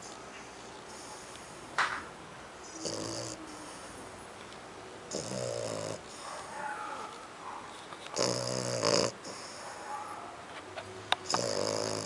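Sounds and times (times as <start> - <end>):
dog snoring: 2.7 - 3.9, 5.1 - 6.2, 8.2 - 9.6, 11.2 - 12.0.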